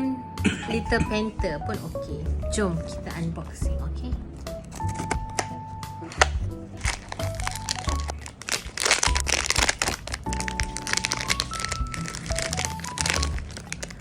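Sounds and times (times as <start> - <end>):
simple melodic background tune: 0.0 - 14.0
plastic and cardboard crinkling: 4.3 - 14.0.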